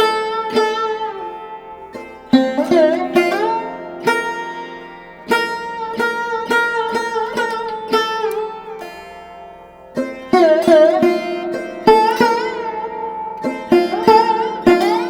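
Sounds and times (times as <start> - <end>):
plucked string instrument: 0.0 - 15.0.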